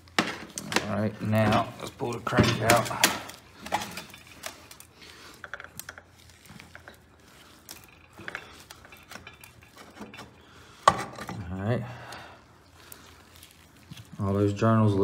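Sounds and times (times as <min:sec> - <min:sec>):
light metallic clicks and scrapes: 0:00.2 - 0:11.4.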